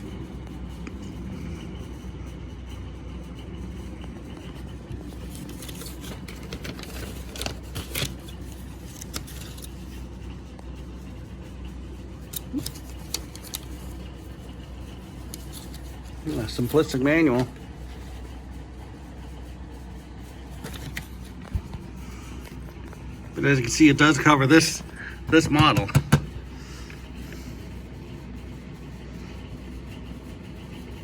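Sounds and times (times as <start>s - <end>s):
steady low hum: 0.0s - 31.0s
handling rustling: 4.8s - 10.1s, 12.3s - 18.2s, 20.4s - 27.4s.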